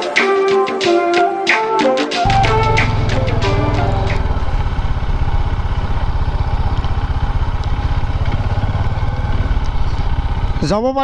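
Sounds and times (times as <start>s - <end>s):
motorcycle engine running: 2.2s - 11.0s.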